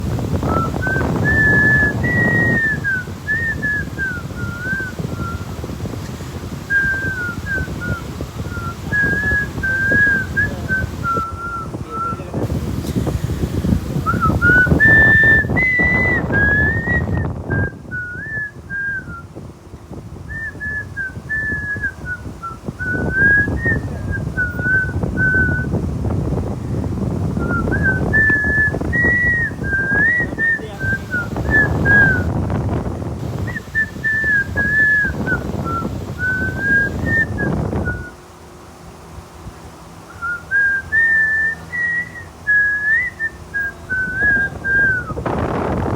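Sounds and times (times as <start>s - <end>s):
person whistling a tune: 0.4s - 5.6s, 6.7s - 12.3s, 14.0s - 19.3s, 20.3s - 25.8s, 27.4s - 32.4s, 33.4s - 38.2s, 40.1s - 45.8s
low rushing noise: 27.4s - 38.1s.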